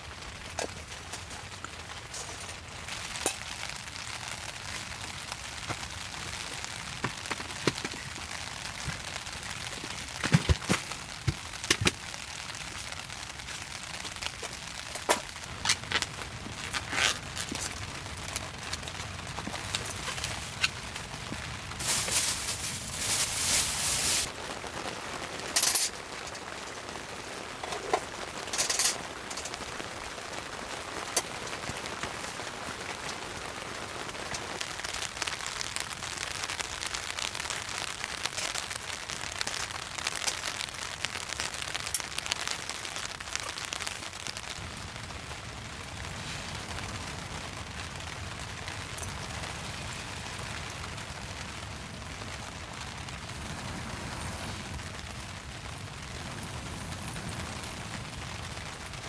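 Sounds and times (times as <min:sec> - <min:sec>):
rain falling: 0:00.0 - 0:59.0
loud short rustling: 0:21.8 - 0:24.3.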